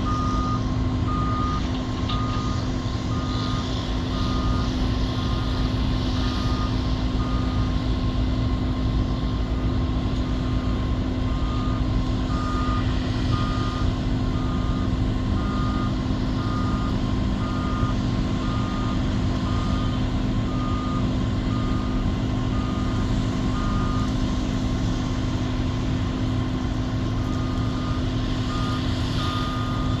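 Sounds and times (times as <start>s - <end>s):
travel alarm beeping: 0.0s - 5.6s, 11.3s - 24.1s, 27.2s - 30.0s
excavator diesel engine humming: 0.0s - 30.0s.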